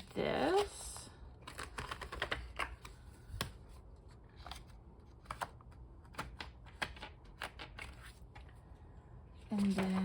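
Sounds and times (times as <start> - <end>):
paper rustling: 9.5 - 10.0.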